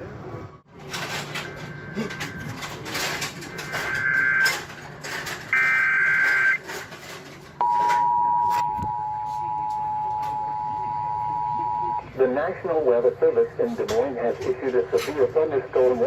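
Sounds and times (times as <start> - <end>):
screechy digital data bursts: 3.5 - 4.6, 5.5 - 6.6
two-tone attention signal: 3.5 - 4.6, 5.5 - 6.6, 7.6 - 12.0.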